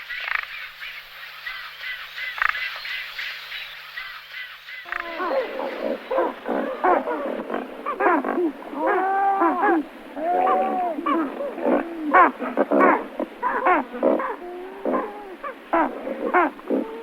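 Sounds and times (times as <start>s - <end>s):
pelicans calling: 4.8s - 17.0s.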